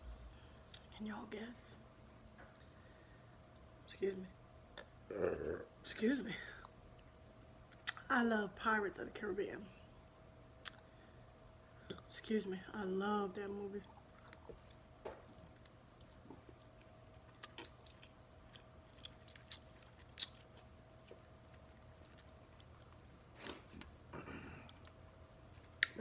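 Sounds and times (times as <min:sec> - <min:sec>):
faint steady hum: 0:00.0 - 0:26.0
chewing with wet mouth clicks: 0:13.9 - 0:24.0, 0:25.6 - 0:26.0.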